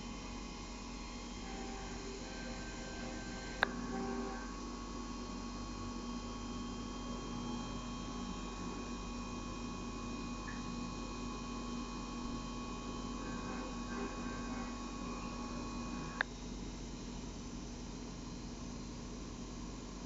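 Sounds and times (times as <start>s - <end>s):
milling machine humming: 0.7s - 16.2s.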